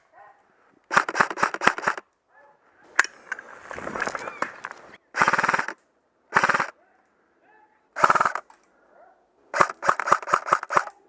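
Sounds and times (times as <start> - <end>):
airsoft gun firing bursts: 0.9 - 2.0, 5.1 - 6.8, 8.0 - 8.5, 9.5 - 11.0.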